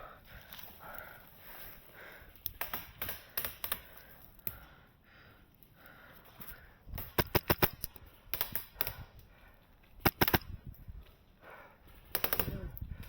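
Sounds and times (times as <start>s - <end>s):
airsoft guns firing: 2.6s - 4.0s, 7.0s - 9.0s, 10.0s - 10.5s, 12.1s - 12.6s.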